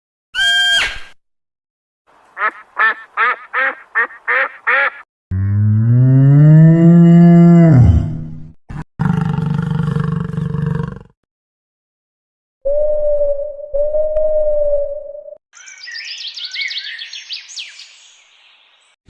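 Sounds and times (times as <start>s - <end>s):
harsh rasping call: 2.4s - 5.0s
short quacking calls: 2.4s - 5.0s.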